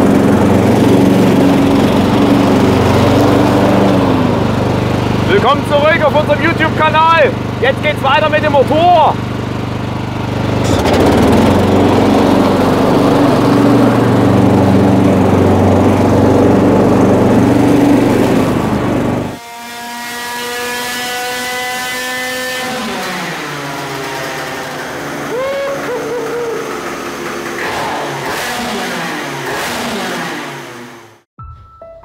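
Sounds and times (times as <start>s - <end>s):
moped engine running: 0.0s - 19.4s, 20.0s - 31.2s
high whining tone: 10.6s - 15.5s, 24.4s - 28.7s.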